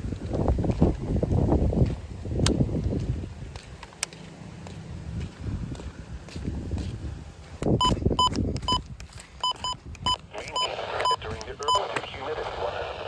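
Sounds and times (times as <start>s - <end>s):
short electronic beeps: 7.8s - 8.8s, 9.4s - 11.9s
radio hiss: 10.2s - 13.0s.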